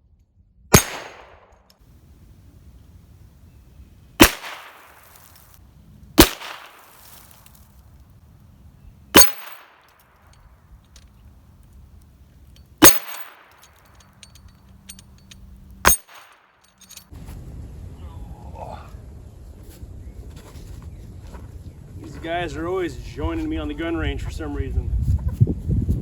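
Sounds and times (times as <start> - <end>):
revolver gunshots with echo: 0.7 - 1.6, 4.2 - 5.1, 6.2 - 6.9, 9.2 - 9.9, 12.8 - 13.6.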